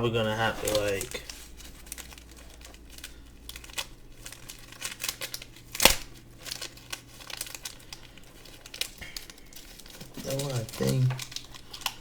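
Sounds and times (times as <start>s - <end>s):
plastic packaging crinkling: 0.0s - 12.0s
sharp plastic snap: 5.8s - 6.1s.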